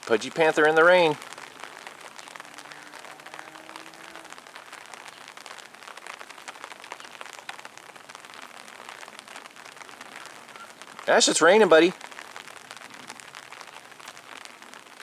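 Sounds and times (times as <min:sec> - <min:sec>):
steady rain falling: 0:00.0 - 0:15.0.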